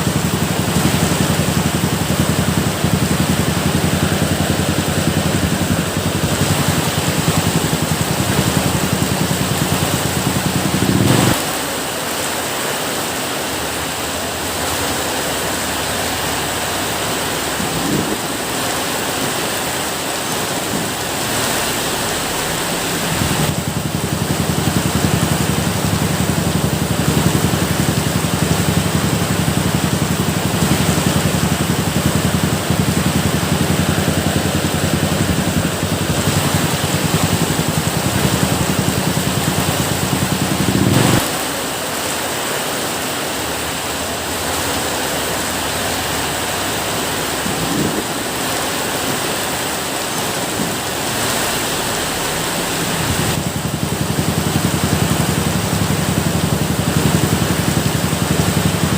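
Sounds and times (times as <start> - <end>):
low pulsing rumble: 0.0 - 11.6, 16.5 - 41.4, 50.4 - 58.9
steady rain: 0.0 - 58.9.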